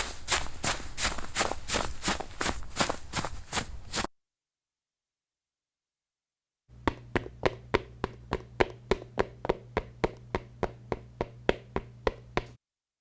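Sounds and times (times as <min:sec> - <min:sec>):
running footsteps: 0:00.0 - 0:04.1
low steady hum: 0:06.7 - 0:12.6.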